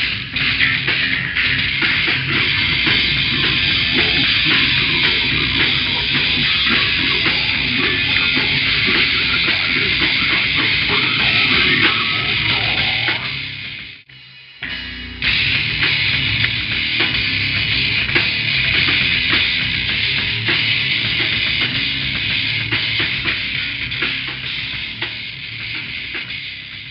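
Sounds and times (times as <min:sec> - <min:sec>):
pounding drums: 0:00.0 - 0:13.8
distorted guitars: 0:00.0 - 0:26.9.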